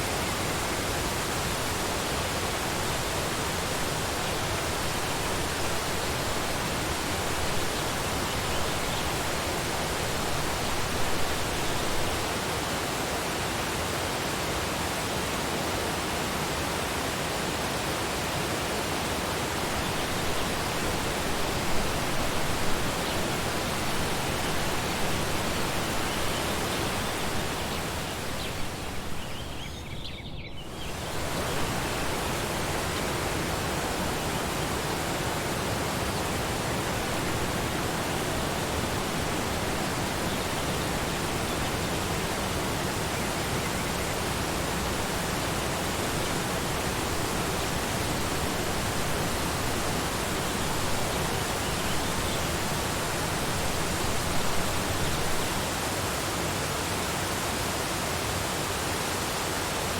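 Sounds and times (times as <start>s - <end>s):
waterfall rushing: 0.0s - 29.4s, 30.8s - 59.9s.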